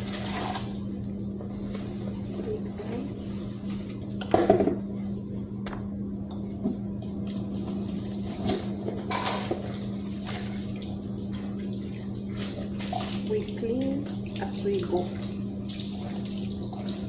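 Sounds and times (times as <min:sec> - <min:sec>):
steady low hum: 0:00.0 - 0:17.0
dishes and utensils clattering: 0:08.4 - 0:09.6.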